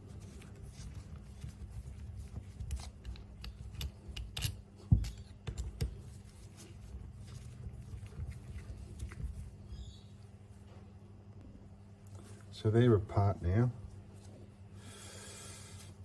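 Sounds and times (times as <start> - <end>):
metal parts clicking and scraping: 2.7 - 5.9.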